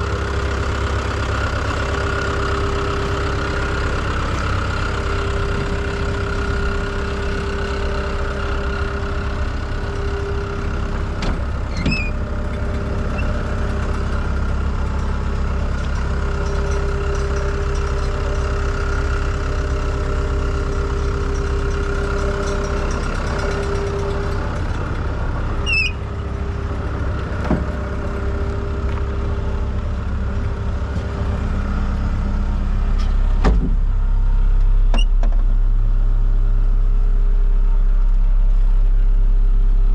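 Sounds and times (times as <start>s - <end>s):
diesel engine humming: 0.0s - 39.9s
brief squeaks or clicks: 11.7s - 12.2s, 25.6s - 26.0s, 34.9s - 35.2s.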